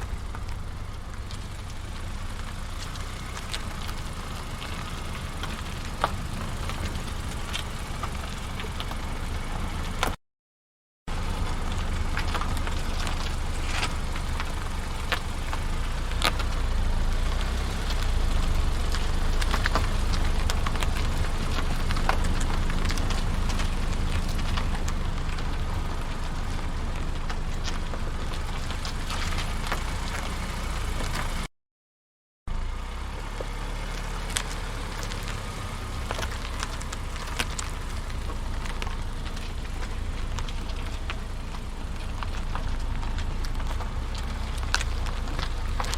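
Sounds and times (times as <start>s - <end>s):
car engine rumble: 0.0s - 10.2s, 11.1s - 31.5s, 32.5s - 45.9s
light ticks: 36.1s - 45.9s.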